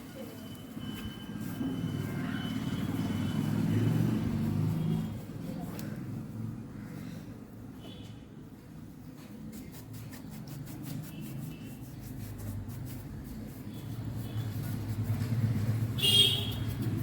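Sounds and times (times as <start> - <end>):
road traffic rumble: 0.6 - 7.7, 11.0 - 17.0
scratchy rubbing strokes: 9.4 - 17.0.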